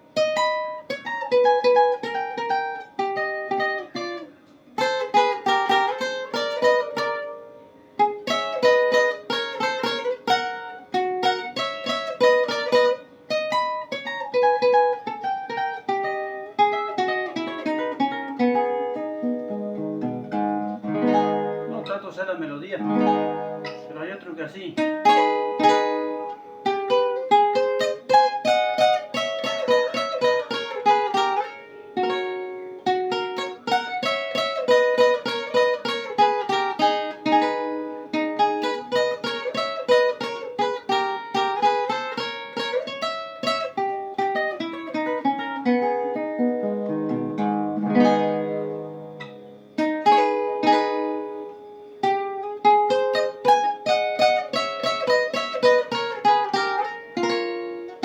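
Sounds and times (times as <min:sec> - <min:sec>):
small guitar plucked melody: 0:00.0 - 0:58.0.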